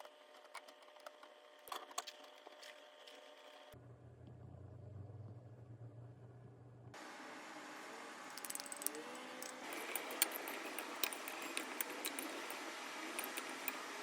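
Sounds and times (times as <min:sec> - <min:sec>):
utensils clinking against bowl: 0:08.4 - 0:14.0.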